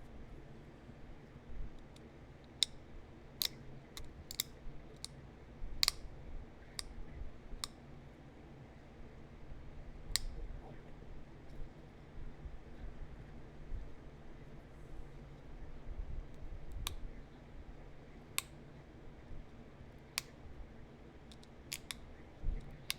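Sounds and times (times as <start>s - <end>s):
stone flakes snapping clicks: 3.4s - 5.2s, 5.8s - 6.0s, 21.3s - 22.0s.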